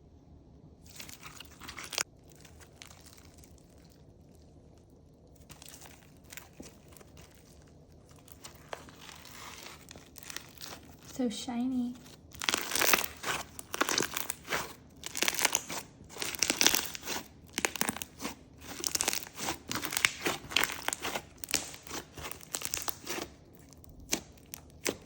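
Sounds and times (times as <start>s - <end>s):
slime with beads crackling: 0.8s - 25.0s.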